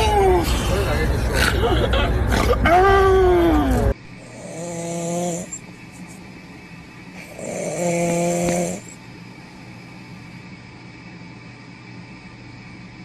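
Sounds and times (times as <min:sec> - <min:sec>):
person snoring: 0:04.2 - 0:05.6, 0:07.2 - 0:09.0.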